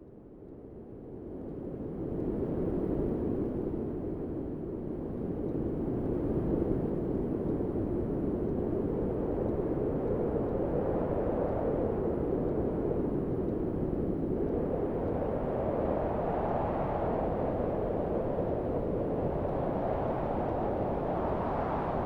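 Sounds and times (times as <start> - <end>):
wind blowing in gusts: 8.7 - 22.0.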